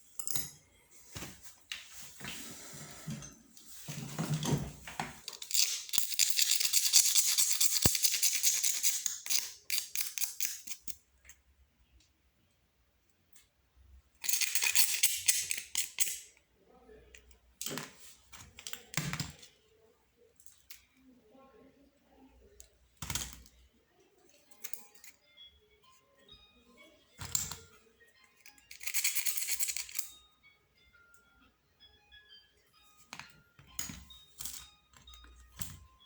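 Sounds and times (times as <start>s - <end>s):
scratchy rubbing of telephone parts: 5.2s - 10.9s, 28.4s - 30.1s.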